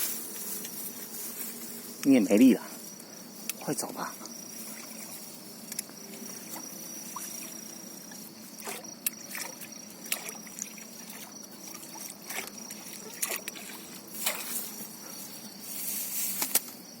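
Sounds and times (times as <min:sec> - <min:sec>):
high insect trill: 0:00.0 - 0:17.0
water sloshing and splashing: 0:04.5 - 0:05.3, 0:06.4 - 0:14.8.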